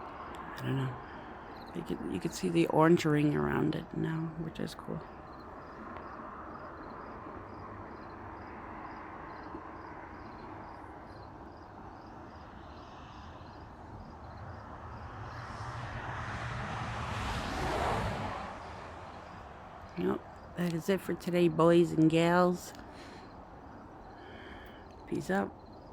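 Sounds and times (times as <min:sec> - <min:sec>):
outdoor background rumble: 0:00.0 - 0:25.9
vehicle passing: 0:12.9 - 0:23.3.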